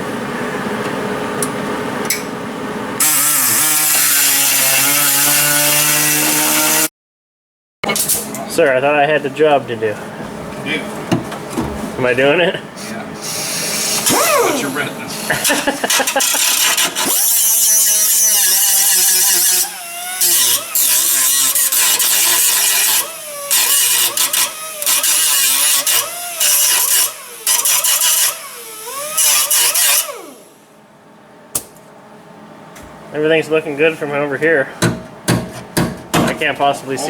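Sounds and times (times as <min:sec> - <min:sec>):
power tool grinding sheet metal: 0:03.0 - 0:06.9, 0:13.2 - 0:30.6.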